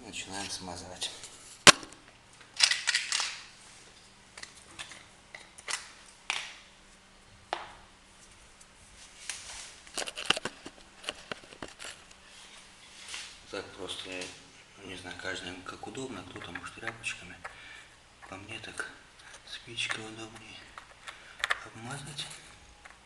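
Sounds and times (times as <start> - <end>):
handling clicks and scrapes: 9.3 - 12.2.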